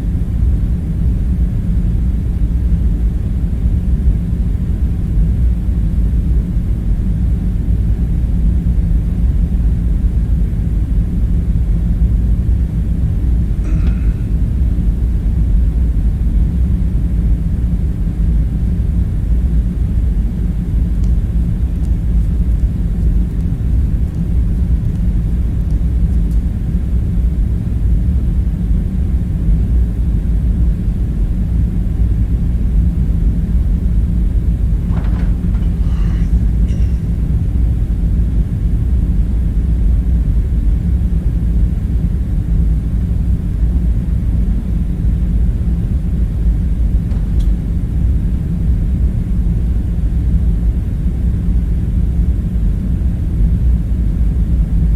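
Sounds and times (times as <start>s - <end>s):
low rumbling room drone: 0.0s - 54.9s
faint clink or rustle: 35.6s - 37.2s.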